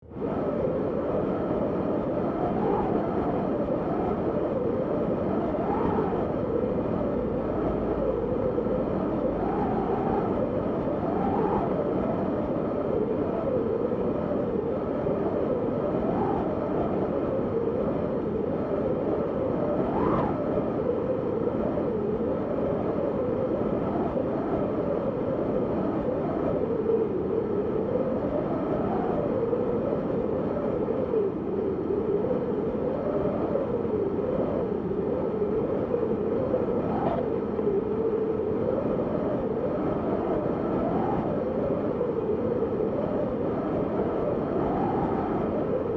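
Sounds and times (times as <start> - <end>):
wind howling: 0.0 - 45.9.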